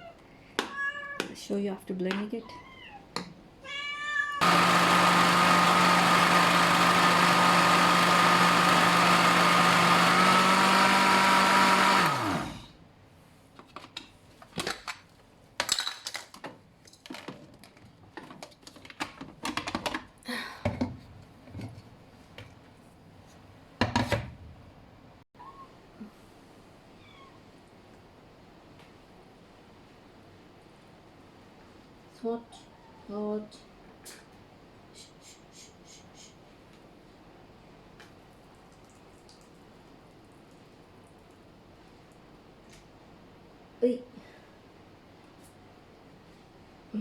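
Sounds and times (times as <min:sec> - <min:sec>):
blender running: 0:04.4 - 0:12.7.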